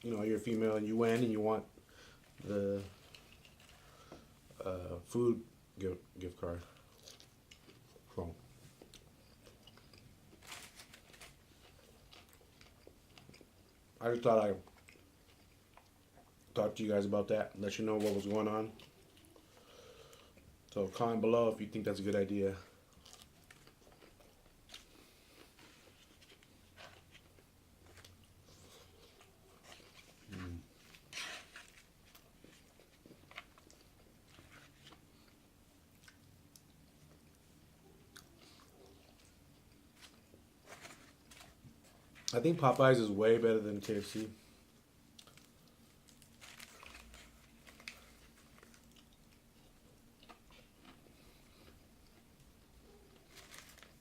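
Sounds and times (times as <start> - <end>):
small clicks and crinkles: 2.2 - 4.2, 8.7 - 13.6, 22.9 - 35.4, 38.1 - 42.4, 45.1 - 54.0
person chewing food: 6.7 - 8.1, 8.7 - 14.0, 14.6 - 16.5, 22.8 - 42.3, 44.7 - 54.0.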